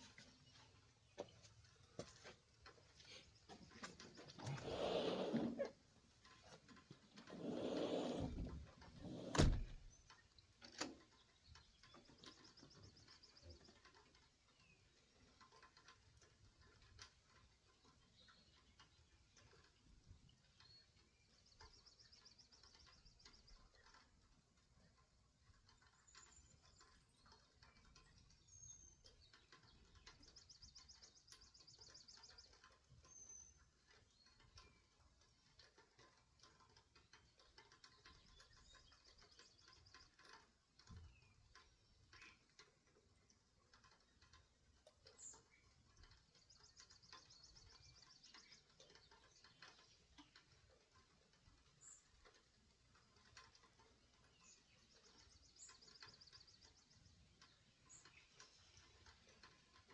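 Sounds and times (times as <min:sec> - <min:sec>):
light ticks: 0:00.0 - 0:59.9
bird chirps: 0:25.8 - 0:35.8, 0:44.8 - 0:50.8, 0:53.6 - 0:59.9.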